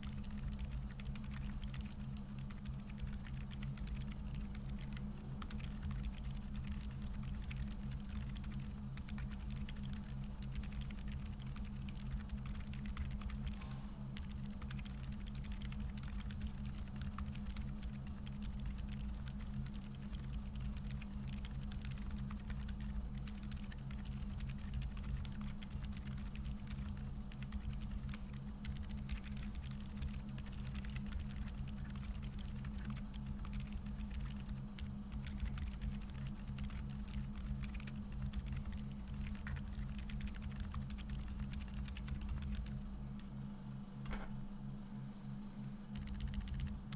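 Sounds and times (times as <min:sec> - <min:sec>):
muted keyboard typing: 0:00.0 - 0:43.3, 0:45.9 - 0:46.9
steady low hum: 0:00.0 - 0:46.9.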